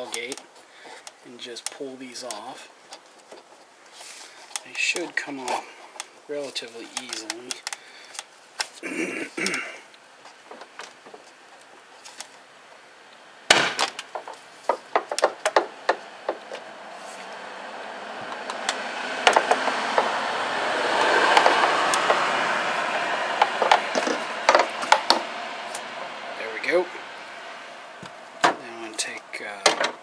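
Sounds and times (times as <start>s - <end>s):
sharp clicks and knocks: 13.5s - 16.7s, 18.2s - 20.2s, 21.0s - 22.3s, 23.4s - 25.8s, 28.0s - 30.0s.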